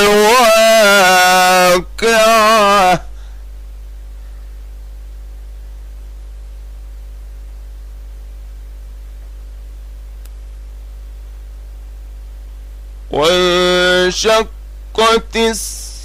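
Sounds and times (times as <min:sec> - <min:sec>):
electrical mains hum: 0:00.0 - 0:16.0
faint tick: 0:10.2 - 0:10.4.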